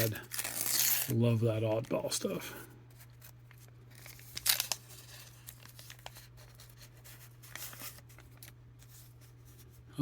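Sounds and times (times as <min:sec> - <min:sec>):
wrapper tearing and crinkling: 0:00.0 - 0:01.2, 0:03.8 - 0:06.3.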